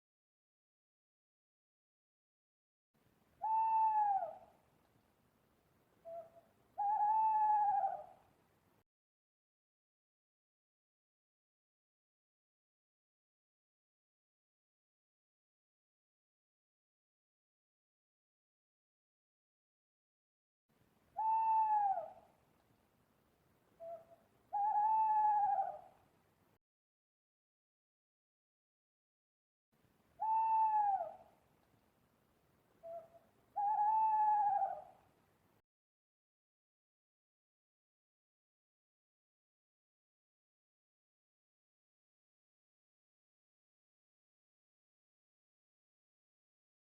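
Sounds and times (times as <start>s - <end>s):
owl hooting: 3.4s - 4.6s, 6.0s - 8.2s, 21.2s - 22.3s, 23.8s - 26.0s, 30.2s - 31.4s, 32.8s - 35.0s.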